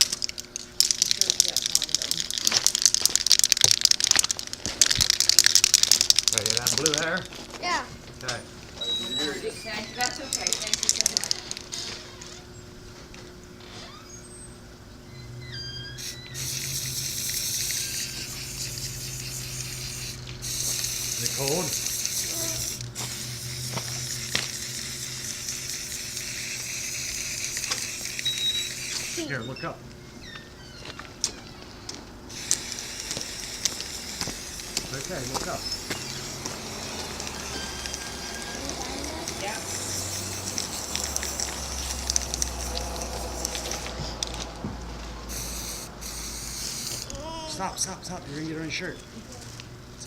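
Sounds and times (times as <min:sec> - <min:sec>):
scattered clicks: 0:00.0 - 0:07.1
aerosol spray hissing: 0:16.0 - 0:29.3, 0:32.3 - 0:44.2, 0:45.2 - 0:47.2.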